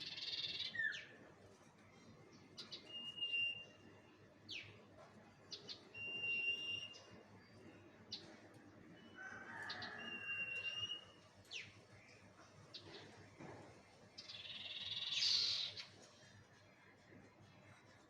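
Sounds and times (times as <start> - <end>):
birds whistling: 2.6 - 3.8, 5.6 - 8.3, 9.8 - 11.7, 14.2 - 15.9.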